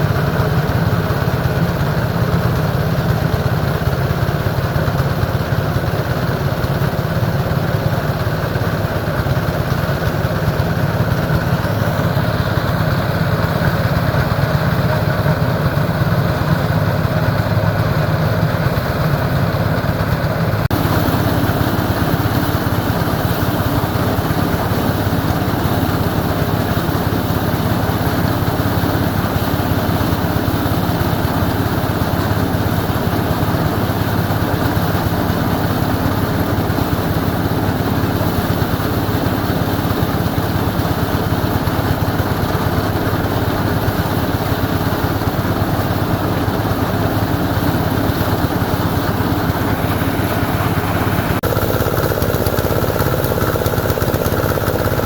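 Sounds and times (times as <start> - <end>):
engine running steadily: 0.0 - 55.0.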